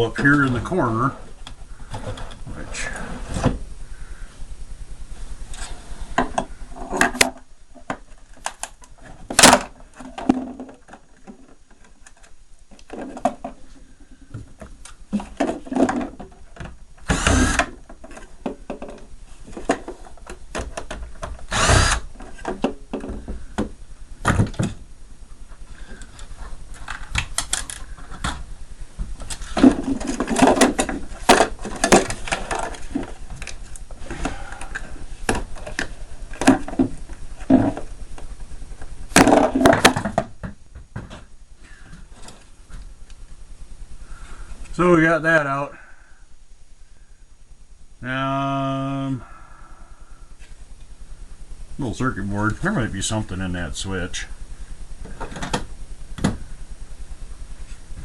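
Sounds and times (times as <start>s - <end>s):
parts clattering: 5.5s - 43.0s
power drill-driver running: 17.0s - 17.8s, 21.4s - 22.2s.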